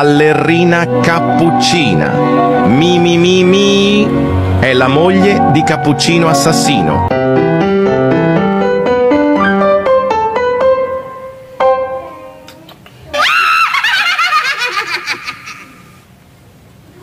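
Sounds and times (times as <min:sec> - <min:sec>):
piano music: 0:00.0 - 0:12.5
high-pitched warbling cry: 0:12.1 - 0:15.0.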